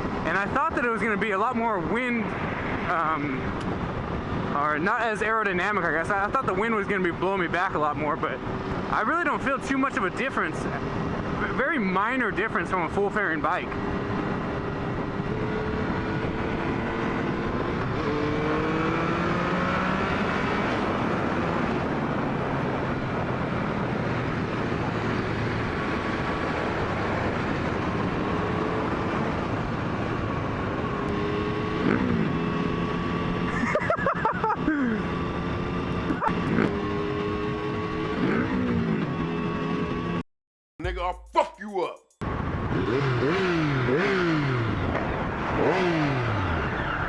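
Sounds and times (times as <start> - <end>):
motorcycle engine revving: 13.7 - 30.2, 30.8 - 33.5, 34.8 - 40.2, 42.2 - 46.8.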